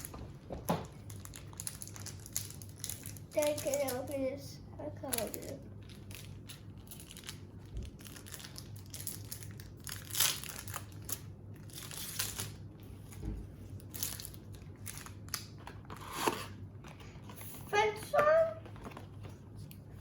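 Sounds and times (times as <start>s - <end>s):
plastic wrapping crinkling and tearing: 0.8s - 4.2s, 4.9s - 16.6s.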